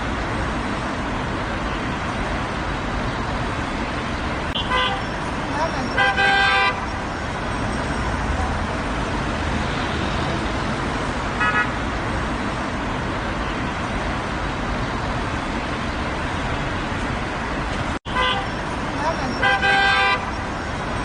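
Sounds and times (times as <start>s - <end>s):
road traffic: 0.0s - 21.0s
car horn blasts: 4.6s - 5.1s, 6.0s - 6.9s, 11.4s - 11.8s, 18.1s - 18.6s, 19.3s - 20.4s.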